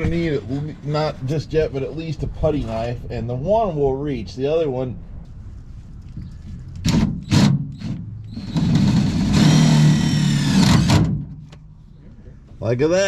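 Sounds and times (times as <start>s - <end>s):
power tool motor running: 7.2s - 11.1s.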